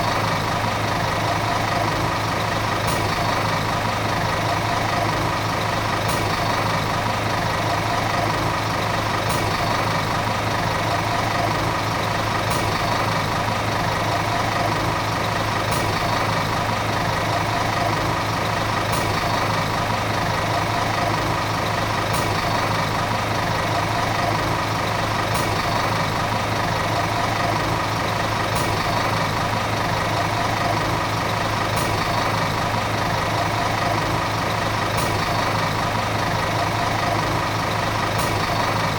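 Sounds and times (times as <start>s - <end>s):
bus diesel engine running: 0.0s - 38.9s.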